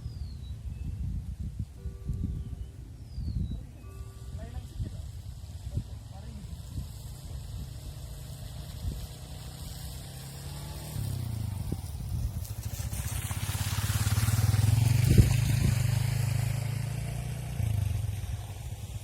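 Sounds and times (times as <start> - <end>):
motorcycle passing by: 4.2 - 19.0.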